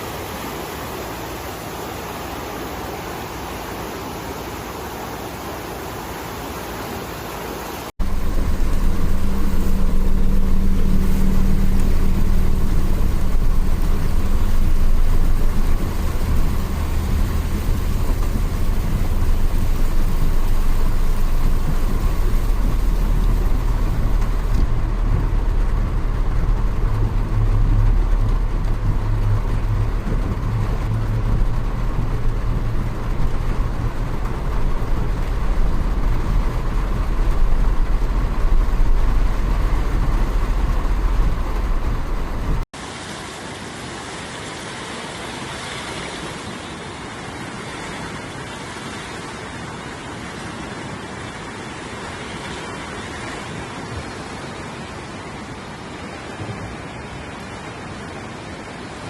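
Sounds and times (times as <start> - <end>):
rushing noise: 0.0 - 59.0
vehicle engine humming: 7.9 - 42.7.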